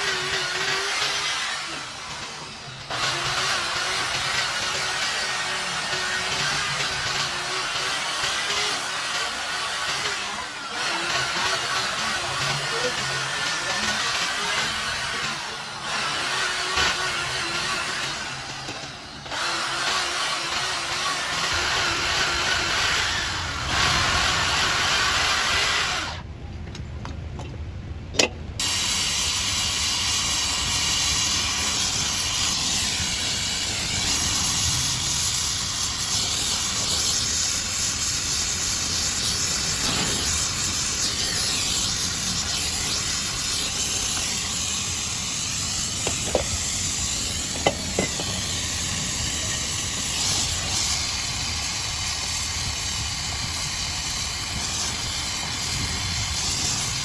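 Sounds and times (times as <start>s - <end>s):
steady loud hiss: 28.6s - 57.0s.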